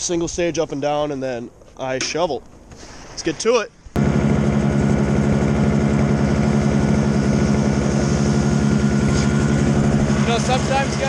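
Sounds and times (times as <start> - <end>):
snowblower engine running: 4.0 - 11.0.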